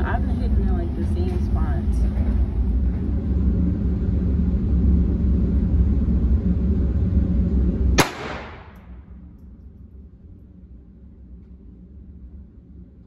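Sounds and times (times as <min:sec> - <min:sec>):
sharp loud bang: 0:08.0 - 0:08.8.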